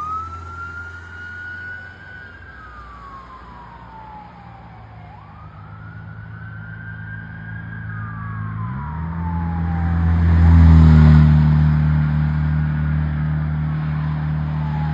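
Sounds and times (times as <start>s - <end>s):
ambulance siren wailing: 0.0s - 11.7s, 13.6s - 14.9s
vehicle engine revving past: 9.8s - 14.9s.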